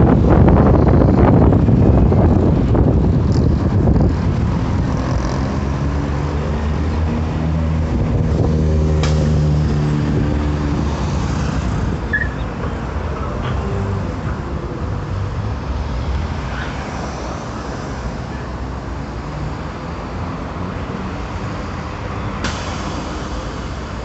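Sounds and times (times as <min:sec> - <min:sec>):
bus diesel engine running: 0:00.0 - 0:16.4, 0:17.2 - 0:24.0.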